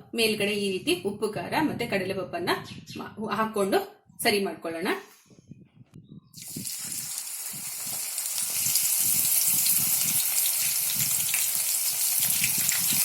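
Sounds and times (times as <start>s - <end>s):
beans deep-frying in oil: 6.4s - 13.0s.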